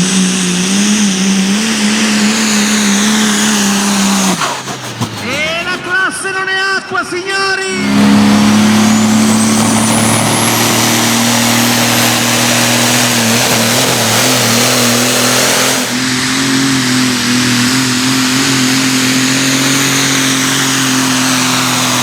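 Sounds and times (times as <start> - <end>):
tractor engine at full throttle: 0.0 - 22.0
high whine: 5.2 - 22.0.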